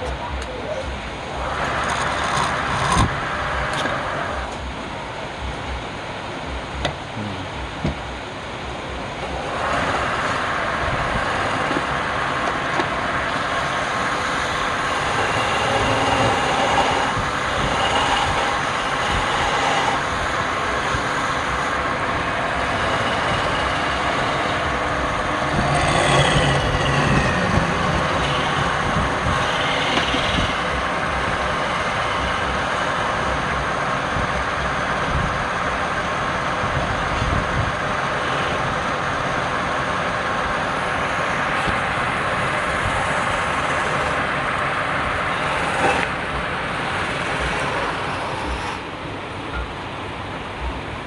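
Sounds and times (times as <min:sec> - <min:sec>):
wood lathe running: 0:00.0 - 0:04.6, 0:09.2 - 0:49.0.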